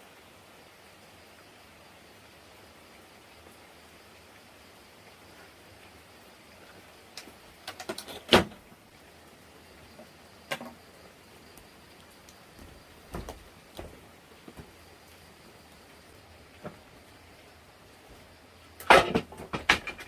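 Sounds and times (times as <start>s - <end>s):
objects knocking and clattering: 18.8s - 20.0s.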